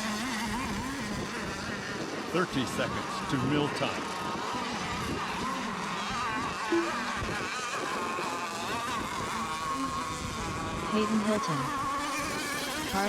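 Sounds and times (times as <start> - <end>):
small boat engines buzzing: 0.0 - 13.0.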